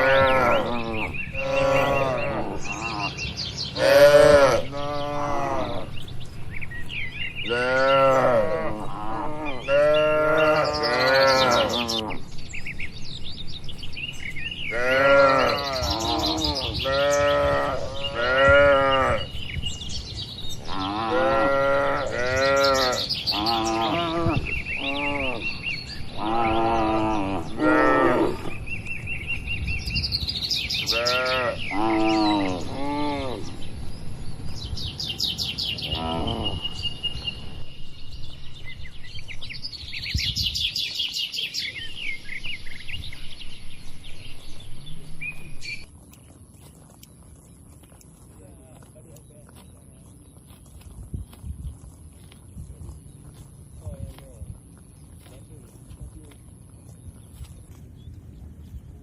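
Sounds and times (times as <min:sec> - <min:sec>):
cattle mooing: 0:00.0 - 0:03.2, 0:03.8 - 0:05.9, 0:07.5 - 0:12.2, 0:14.7 - 0:19.3, 0:20.6 - 0:28.6, 0:30.8 - 0:33.5, 0:35.8 - 0:36.8.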